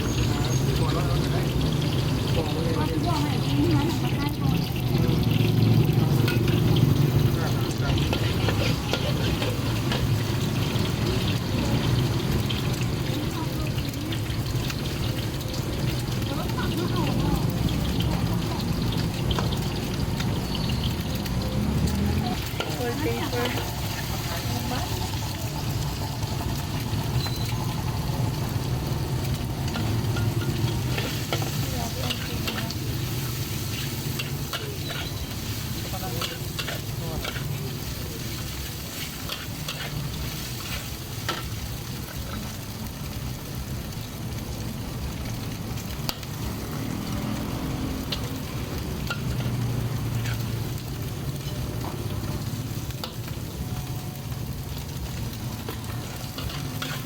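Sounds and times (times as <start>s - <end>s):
food sizzling in pan: 0.0s - 57.0s
spatula scraping pan: 29.7s - 37.5s.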